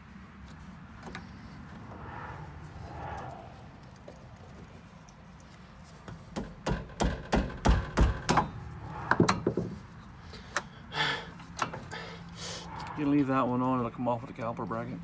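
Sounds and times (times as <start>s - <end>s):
sharp knocks on metal: 6.1s - 9.8s.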